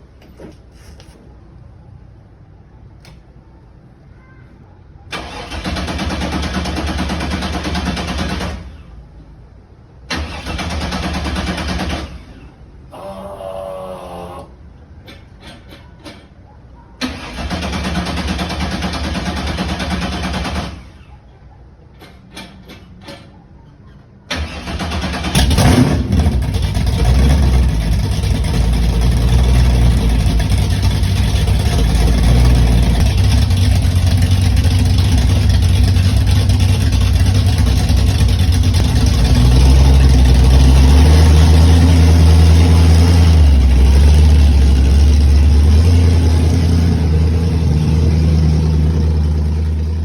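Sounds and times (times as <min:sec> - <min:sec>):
supercharged car engine idling: 0:25.4 - 0:50.0.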